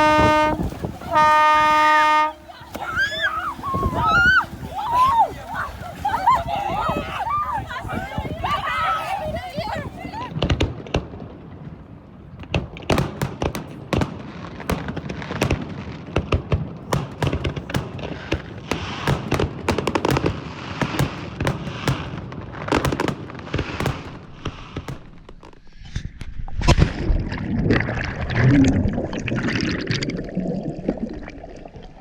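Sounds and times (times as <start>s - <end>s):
fireworks bangs and pops: 0.0s - 3.0s, 10.3s - 26.9s
fireworks crackling hiss: 17.5s - 26.0s.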